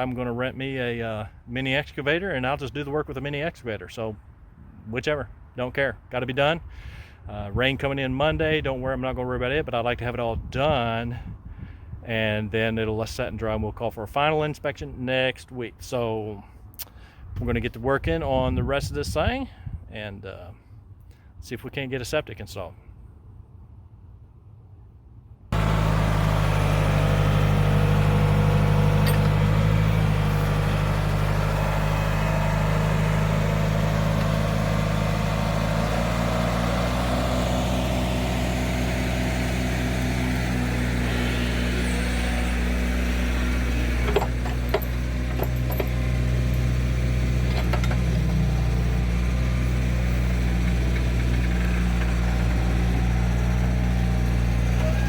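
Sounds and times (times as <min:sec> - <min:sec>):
digging machine engine running: 0:25.5 - 0:55.0.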